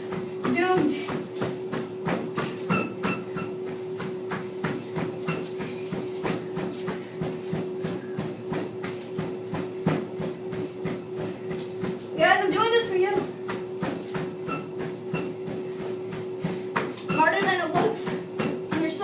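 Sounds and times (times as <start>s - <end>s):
footfalls on treadmill belt: 0.0s - 19.0s
treadmill motor whine: 0.0s - 19.0s.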